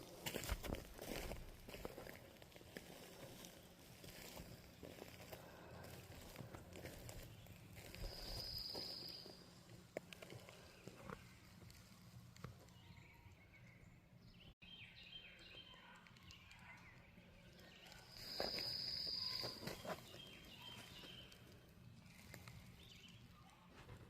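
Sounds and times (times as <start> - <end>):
faint outdoor ambience: 0.0 - 24.0.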